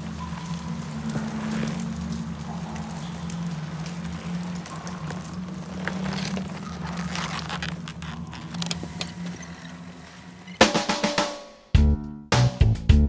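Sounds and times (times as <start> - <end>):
scattered crackles: 0.0 - 11.4
scraping noises: 4.3 - 10.6.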